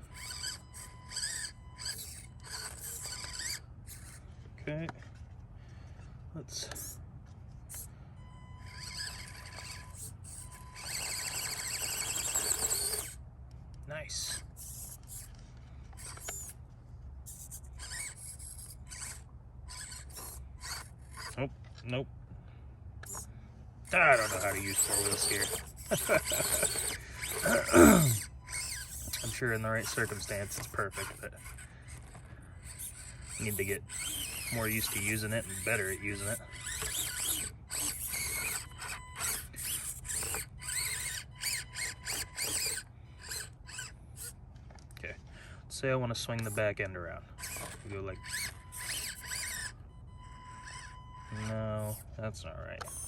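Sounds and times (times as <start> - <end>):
small electric motor whining: 0.0 - 21.6, 23.0 - 45.3, 46.2 - 52.2, 52.8 - 53.0
steady low hum: 0.0 - 53.0.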